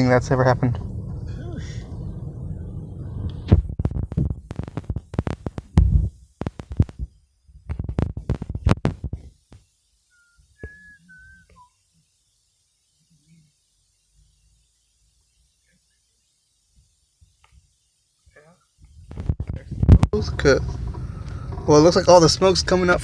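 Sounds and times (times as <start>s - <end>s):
low rumble: 0.0s - 4.9s, 20.2s - 23.0s
high whistle-like tones: 10.1s - 11.8s.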